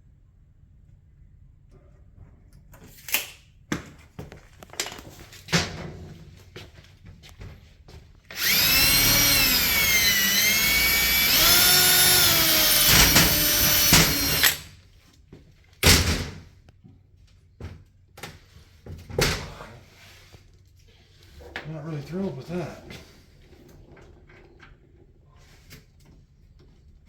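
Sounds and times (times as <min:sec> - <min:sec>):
power drill whining: 0:08.3 - 0:14.7.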